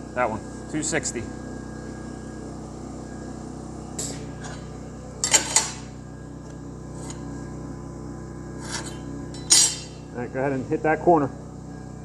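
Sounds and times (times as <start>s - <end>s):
steady low hum: 0.0s - 12.0s
metallic clanks of steel: 4.0s - 5.9s, 8.6s - 10.0s.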